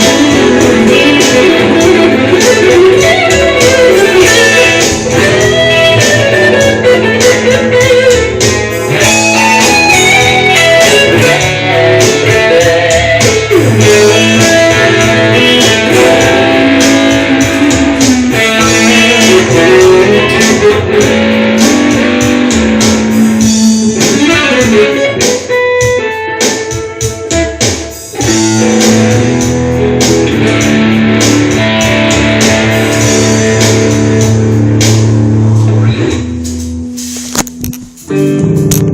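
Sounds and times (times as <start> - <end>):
backing track: 0.0 - 38.9
electric guitar lead lines: 0.0 - 38.9.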